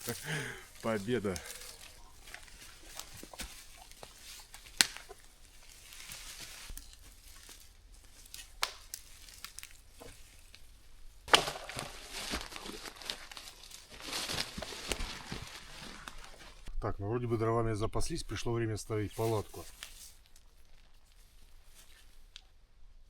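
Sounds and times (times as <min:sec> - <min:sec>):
dry branches snapping: 0:00.0 - 0:16.7, 0:19.3 - 0:20.9
twigs crackling and rustling: 0:00.0 - 0:16.8, 0:18.0 - 0:22.6.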